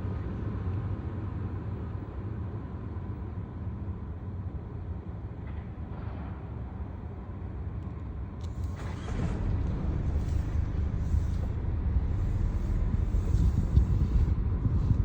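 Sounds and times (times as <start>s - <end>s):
low rumbling noise: 8.4s - 15.0s.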